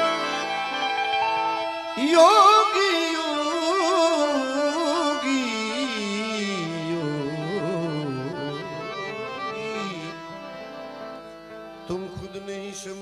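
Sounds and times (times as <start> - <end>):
harmonium sustained tones: 0.0 - 13.0
man singing quavering note: 2.0 - 10.3.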